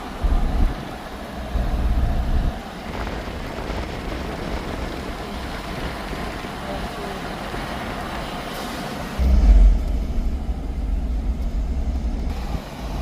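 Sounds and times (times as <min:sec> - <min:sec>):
wind buffeting microphone: 0:00.0 - 0:08.2
steady outdoor rush: 0:00.0 - 0:13.0.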